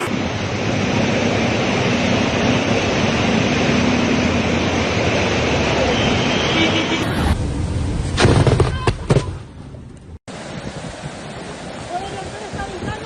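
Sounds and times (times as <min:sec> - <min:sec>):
heavy rain downpour: 0:10.3 - 0:13.0.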